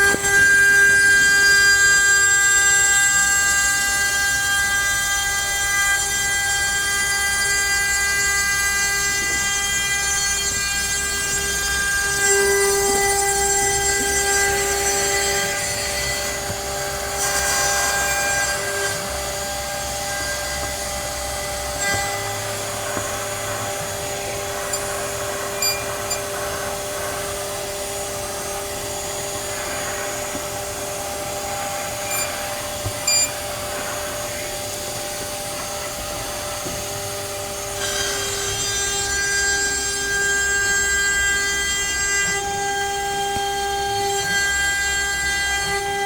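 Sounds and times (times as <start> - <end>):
router spindle whine: 0.0 - 46.0
second steady tone: 24.7 - 26.4, 32.0 - 33.4.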